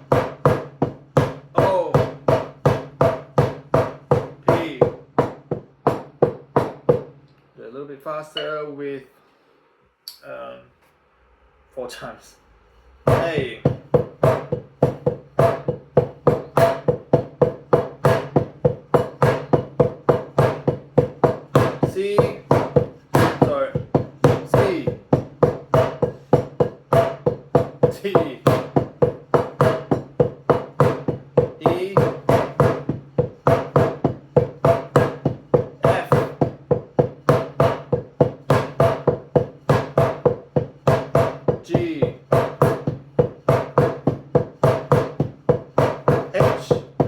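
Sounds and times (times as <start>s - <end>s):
person calling out: 35.8s - 36.2s.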